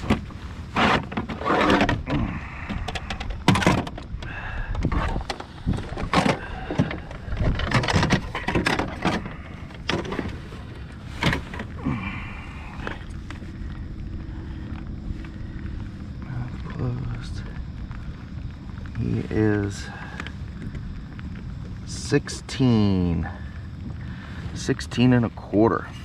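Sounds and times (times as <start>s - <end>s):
rustling: 4.9s - 19.3s.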